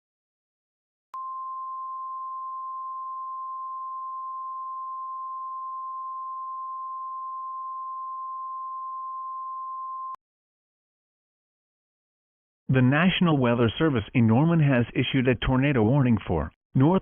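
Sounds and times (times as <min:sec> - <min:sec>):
steady pure alarm tone: 0:01.2 - 0:10.2.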